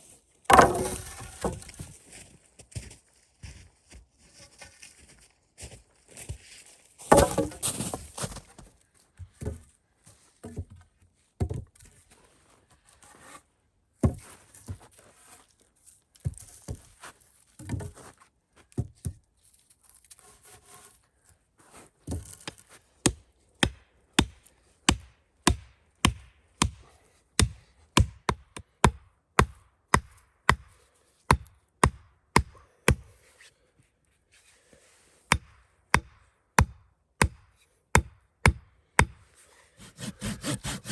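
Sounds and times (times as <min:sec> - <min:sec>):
wood chopping strikes: 0:00.5 - 0:01.8, 0:07.1 - 0:08.1, 0:22.5 - 0:26.8, 0:27.4 - 0:30.7, 0:31.3 - 0:33.0, 0:35.3 - 0:37.4, 0:39.8 - 0:40.9
rustling: 0:07.1 - 0:08.6.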